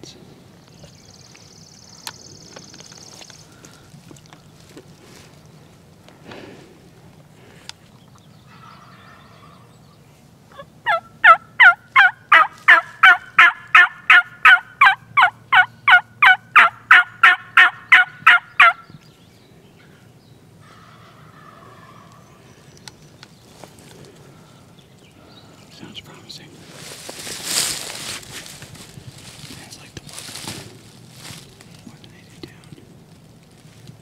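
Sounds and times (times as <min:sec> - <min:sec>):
turkey call yelps: 0:08.5 - 0:09.7, 0:10.5 - 0:18.8, 0:20.6 - 0:22.3.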